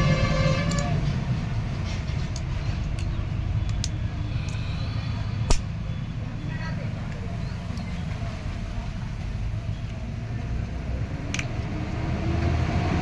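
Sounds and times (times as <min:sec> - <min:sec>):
sharp clicks: 0:02.3 - 0:04.8, 0:05.4 - 0:05.8.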